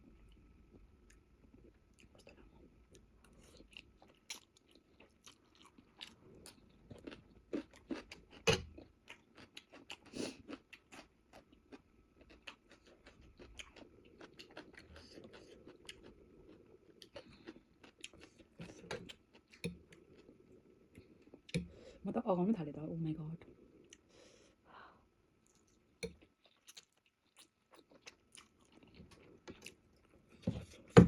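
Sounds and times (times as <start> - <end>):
person chewing crunchy food: 1.6 - 20.4, 25.4 - 30.1.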